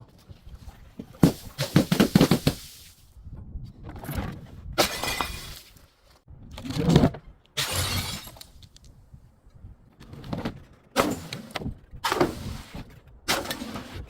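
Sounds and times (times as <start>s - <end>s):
glass bottle breaking: 4.8s - 5.7s, 7.6s - 8.4s.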